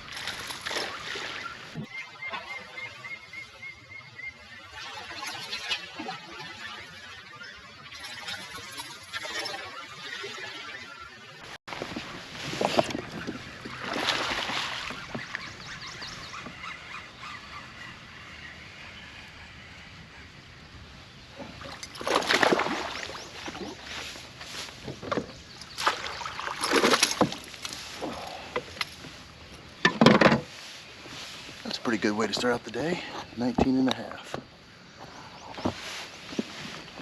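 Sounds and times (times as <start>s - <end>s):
water splashing around kayak: 0.0s - 3.5s, 4.2s - 17.3s, 21.2s - 32.8s.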